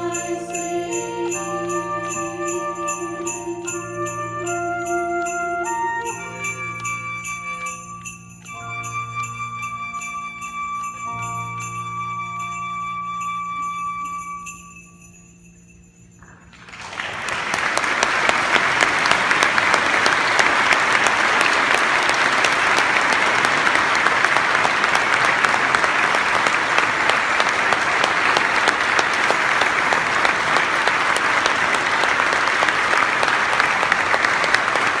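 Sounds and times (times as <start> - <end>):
flute and bells music: 0.0 - 16.5
audience applauding: 16.5 - 35.0.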